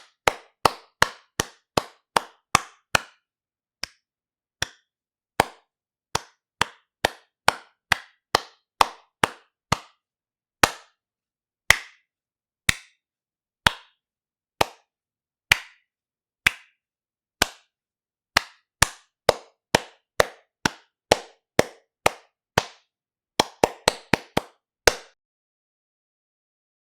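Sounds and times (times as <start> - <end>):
hands clapping: 0.0 - 3.2, 3.8 - 4.0, 4.6 - 10.0, 10.6 - 11.0, 11.7 - 12.1, 12.7 - 13.0, 13.7 - 14.0, 14.6 - 14.9, 15.5 - 16.8, 17.4 - 17.7, 18.4 - 25.2.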